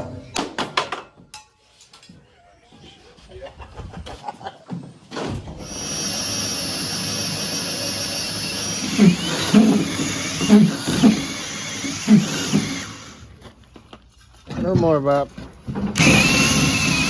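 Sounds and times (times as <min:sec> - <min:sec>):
power tool motor whining: 0:05.6 - 0:13.3, 0:15.9 - 0:17.0.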